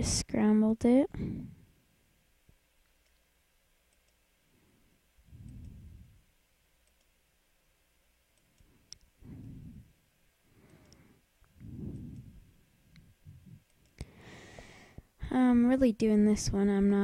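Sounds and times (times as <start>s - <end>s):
computer mouse clicks: 2.8s - 3.3s, 3.9s - 4.2s, 5.4s - 6.0s, 6.8s - 7.2s, 8.3s - 9.6s, 10.7s - 14.1s
low muffled swells: 5.2s - 6.2s, 9.2s - 10.0s, 11.6s - 13.7s.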